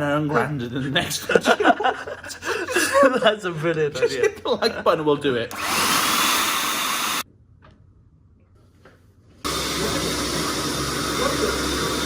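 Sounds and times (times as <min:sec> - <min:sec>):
electric blower rushing hiss: 0:05.5 - 0:07.2, 0:09.5 - 0:12.0.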